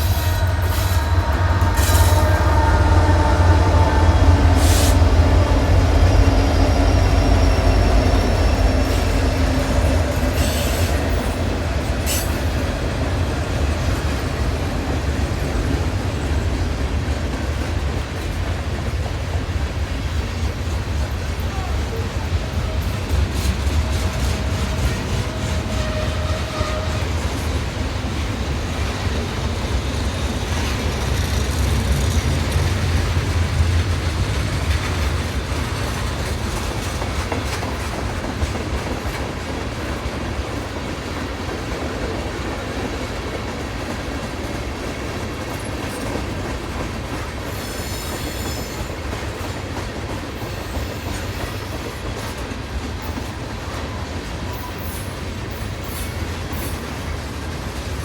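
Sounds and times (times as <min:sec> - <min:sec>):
freight train rumbling past: 0:00.0 - 0:58.0.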